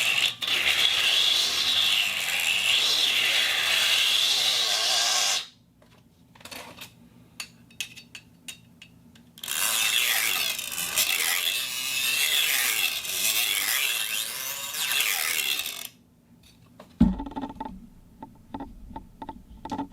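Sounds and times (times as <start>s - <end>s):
thump: 17.0s - 17.9s.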